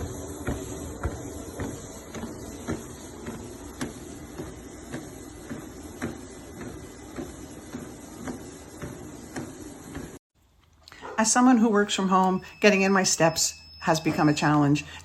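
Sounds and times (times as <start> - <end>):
footfalls on treadmill: 0.0 - 10.2
treadmill motor and belt noise: 0.0 - 10.2, 11.0 - 15.0.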